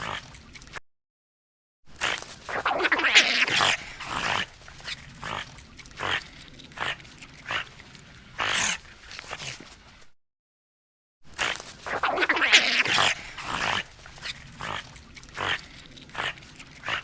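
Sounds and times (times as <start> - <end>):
otter harsh calls: 2.0 - 7.7, 11.4 - 17.0.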